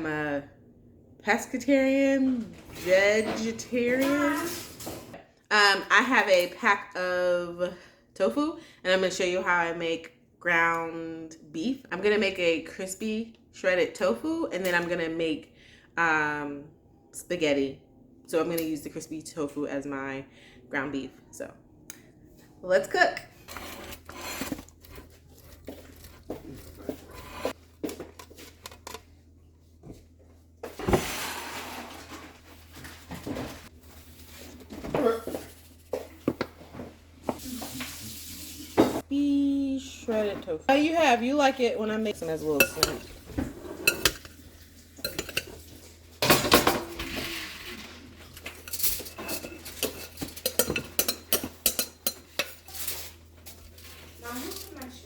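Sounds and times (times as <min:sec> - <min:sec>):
utensils clinking against dishes: 0:42.4 - 0:44.4, 0:45.0 - 0:45.6, 0:48.3 - 0:53.2.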